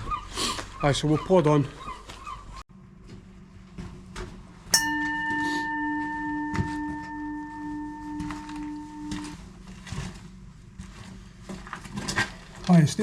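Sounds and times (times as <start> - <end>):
bell ringing: 4.8 - 9.4.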